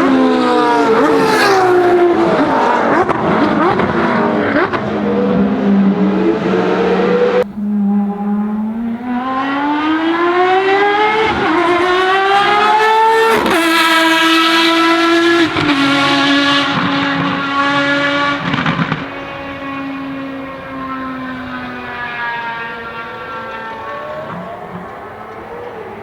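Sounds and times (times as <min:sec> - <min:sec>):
car engine accelerating hard: 0:00.0 - 0:26.0
gear upshifts: 0:00.8 - 0:04.7.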